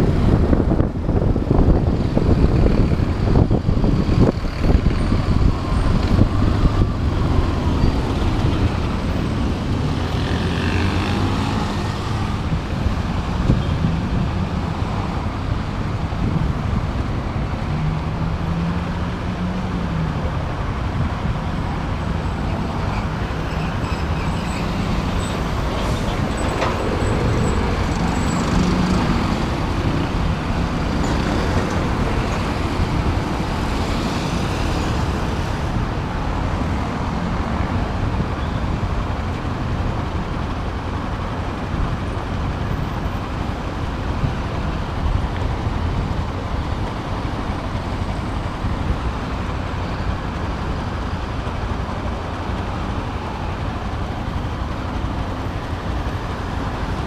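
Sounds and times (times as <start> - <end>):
road and wind noise: 0.0 - 57.0.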